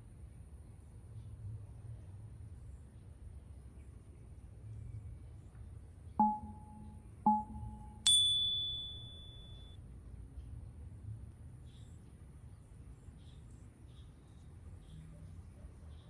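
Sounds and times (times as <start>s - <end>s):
struck chime tones: 6.2s - 9.8s.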